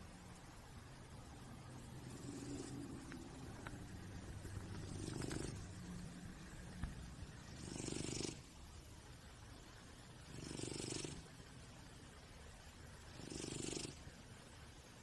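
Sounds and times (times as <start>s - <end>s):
cat snoring: 2.0s - 3.0s, 4.8s - 5.8s, 7.4s - 8.5s, 10.2s - 11.3s, 13.1s - 14.2s.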